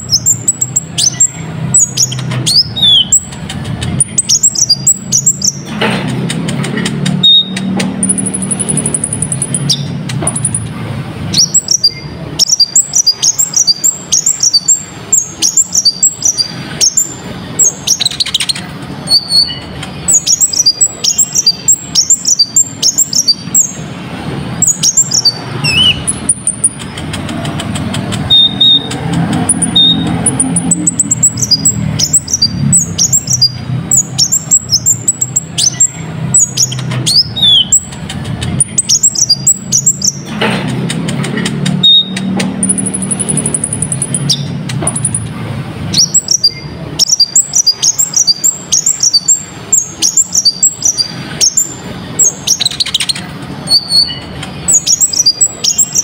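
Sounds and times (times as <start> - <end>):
bird chirps and trills: 0.0 - 56.0.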